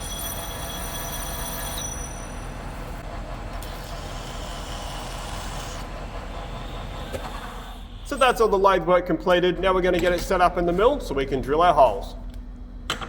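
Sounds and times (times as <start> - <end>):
metallic ringing squeal from cut: 0.0 - 2.8
lathe running: 0.0 - 8.6.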